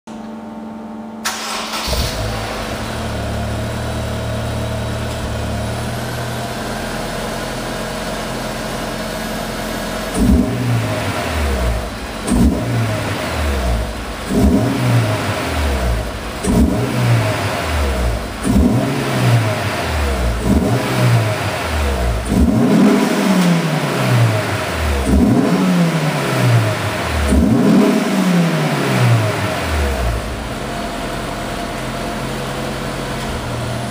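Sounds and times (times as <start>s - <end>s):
car engine starting and revving: 1.2s - 8.9s, 9.6s - 33.9s.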